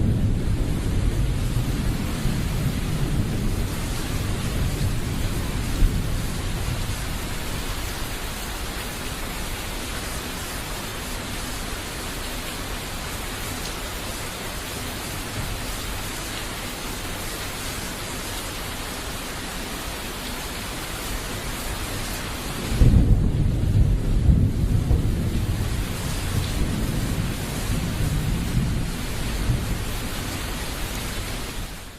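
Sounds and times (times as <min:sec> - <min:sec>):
thunder rumbling: 0:00.0 - 0:08.2, 0:22.4 - 0:31.8
rain hissing: 0:00.0 - 0:31.9.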